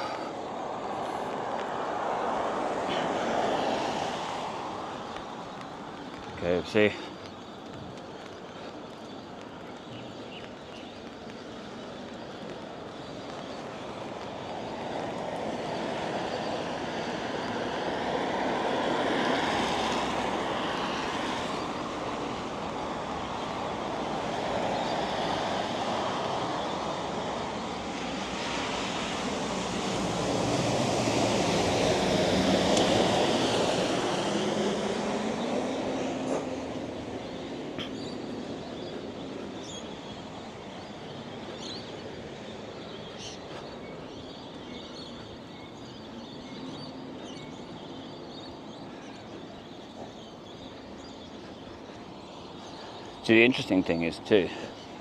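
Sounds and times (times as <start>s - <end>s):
vehicles passing on wet road: 0.0s - 55.0s.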